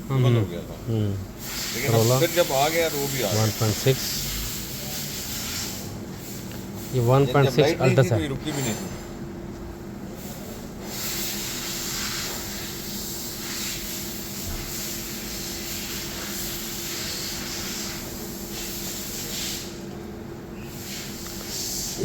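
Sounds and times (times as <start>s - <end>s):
low even hum: 0.0s - 10.8s
steady rushing hiss: 1.2s - 8.4s, 10.2s - 19.9s.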